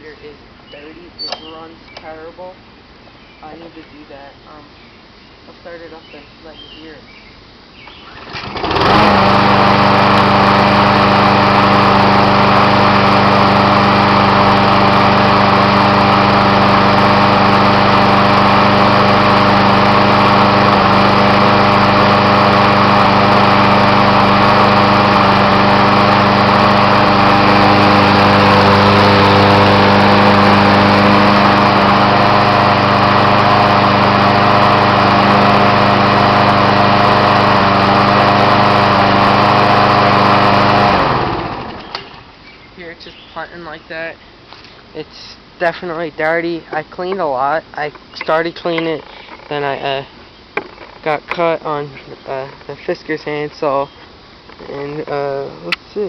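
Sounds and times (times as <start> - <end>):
lawn mower engine running: 7.8 - 43.9, 48.1 - 53.9.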